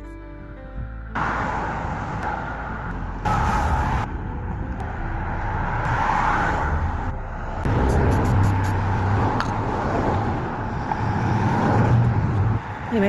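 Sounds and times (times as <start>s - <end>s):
road traffic rumble: 0.3s - 13.0s.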